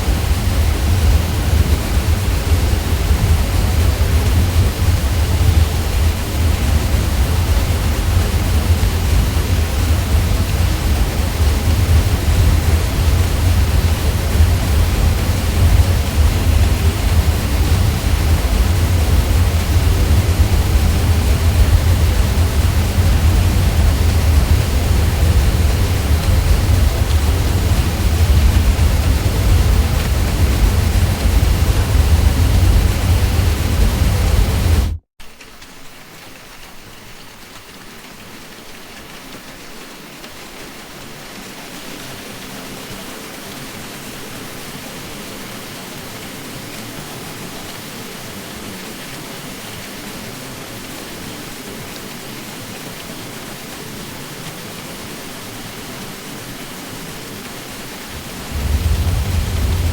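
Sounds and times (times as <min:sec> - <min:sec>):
ceiling fan drone: 0:00.0 - 0:35.0, 0:57.3 - 0:59.9.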